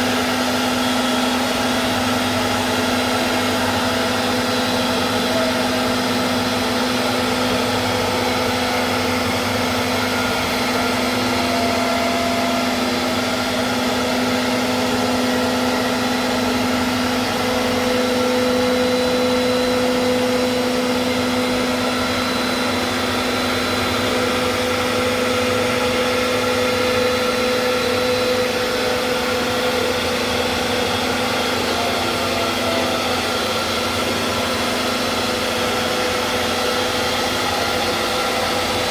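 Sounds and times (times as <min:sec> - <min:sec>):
machine motor humming and whining: 0:00.0 - 0:38.9.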